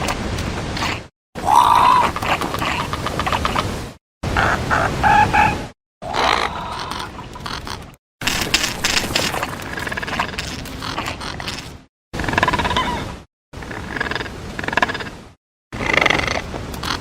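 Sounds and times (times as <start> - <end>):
creature call rising and falling: 1.4 - 2.5.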